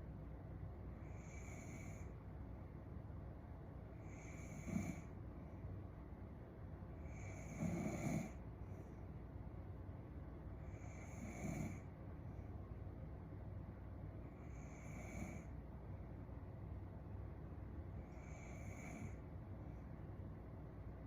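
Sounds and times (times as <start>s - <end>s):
woman snoring softly: 1.0s - 2.1s, 4.0s - 5.2s, 7.0s - 8.4s, 10.6s - 11.9s, 14.3s - 15.6s, 18.0s - 19.2s.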